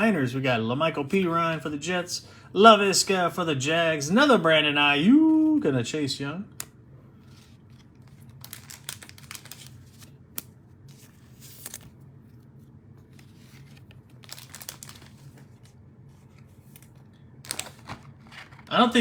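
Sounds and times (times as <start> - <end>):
cellophane crinkling and tearing: 6.6 - 19.0.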